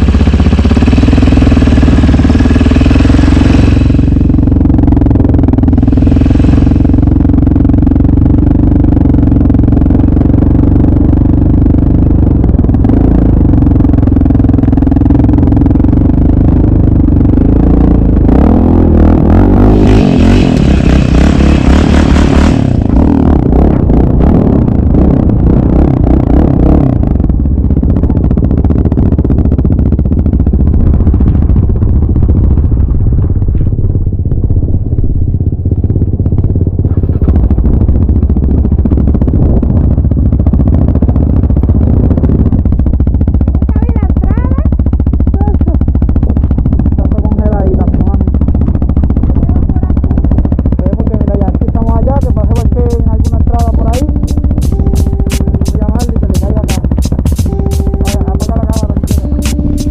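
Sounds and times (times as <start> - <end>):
loud hiss: 0.0 - 4.5, 5.8 - 7.2
atv engine running: 0.0 - 59.9.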